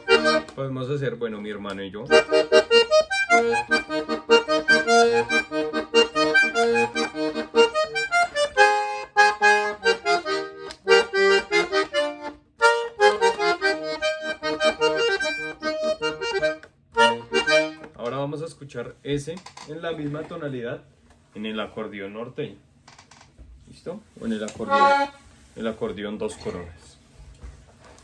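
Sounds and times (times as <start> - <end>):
button accordion playing: 0.0 - 0.6, 2.1 - 18.0, 24.6 - 25.3.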